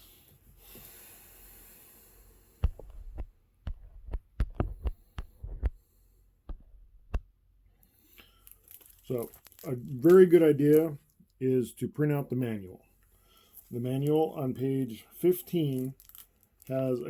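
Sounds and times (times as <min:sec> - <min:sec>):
small hard objects clicking: 0:08.2 - 0:11.4, 0:15.5 - 0:16.8.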